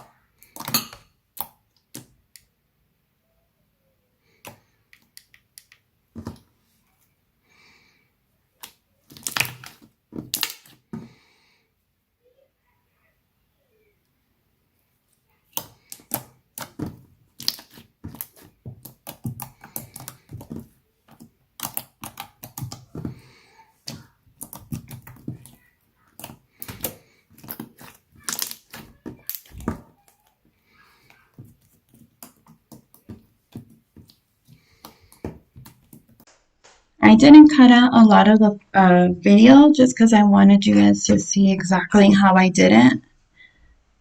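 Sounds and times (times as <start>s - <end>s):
slime squished by hand: 8.6s - 11.0s, 15.4s - 36.3s.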